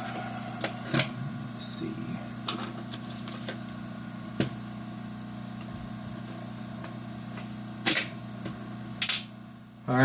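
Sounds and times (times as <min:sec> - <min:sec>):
electrical hum: 0:00.0 - 0:10.0.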